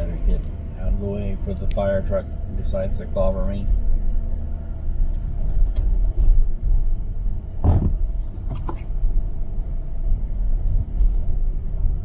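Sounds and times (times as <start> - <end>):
car driving on slushy road: 0.0 - 12.0
thump: 7.6 - 8.9.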